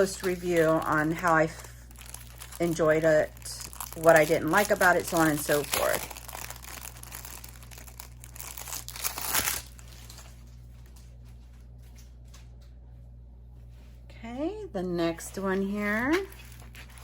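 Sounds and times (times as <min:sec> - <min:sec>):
plastic packaging crinkling: 0:00.0 - 0:11.0, 0:15.6 - 0:17.0.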